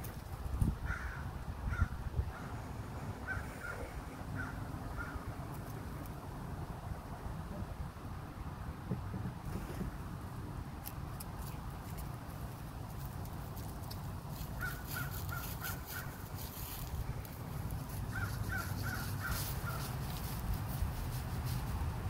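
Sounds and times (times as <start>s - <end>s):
crow cawing: 0.8s - 2.5s, 3.2s - 5.3s, 14.6s - 16.2s, 18.1s - 19.9s.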